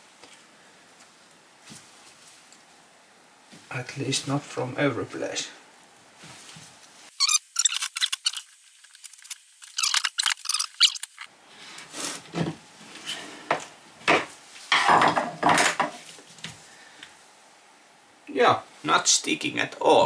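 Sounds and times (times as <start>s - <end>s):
handling rustles and knocks: 0.2s - 2.7s, 6.2s - 7.1s, 11.6s - 16.7s.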